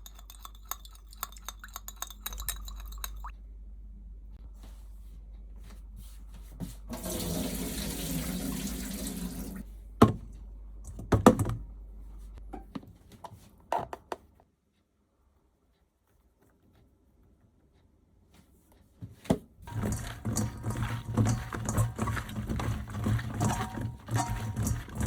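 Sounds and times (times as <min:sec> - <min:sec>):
low steady hum: 0:00.0 - 0:07.8.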